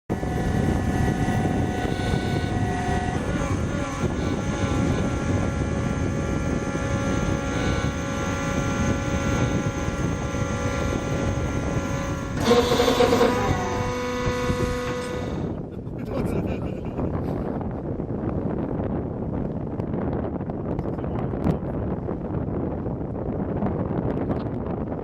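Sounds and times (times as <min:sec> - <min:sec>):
loud mechanical drone: 0:00.1 - 0:16.4.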